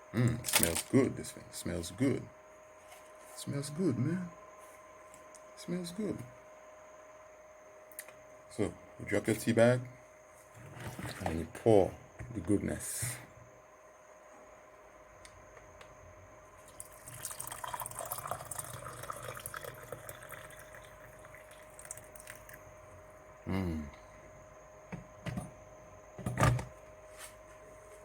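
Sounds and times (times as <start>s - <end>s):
water pouring into a cup: 16.6s - 22.6s.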